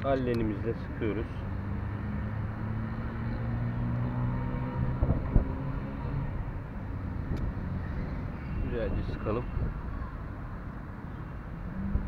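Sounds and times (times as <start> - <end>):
low engine hum: 0.0 - 8.7.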